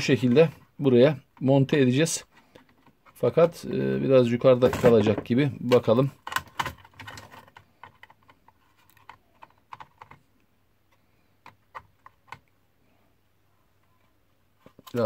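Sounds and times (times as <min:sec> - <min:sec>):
plastic and metal clicks: 0:04.7 - 0:10.2.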